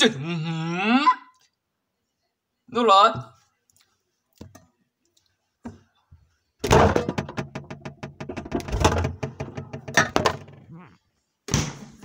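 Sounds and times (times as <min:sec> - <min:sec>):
knocks and thuds in fridge: 0:06.6 - 0:10.5
fridge door rattling: 0:06.7 - 0:10.6.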